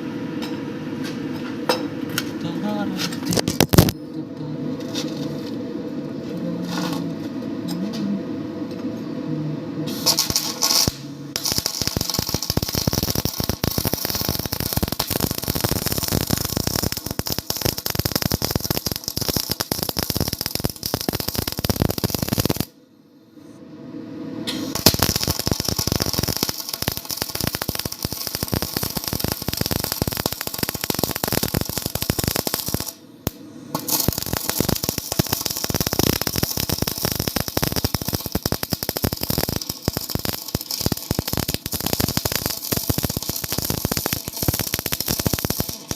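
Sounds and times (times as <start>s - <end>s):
arc welding crackling: 2.5s - 3.9s, 9.9s - 22.7s, 24.7s - 45.9s.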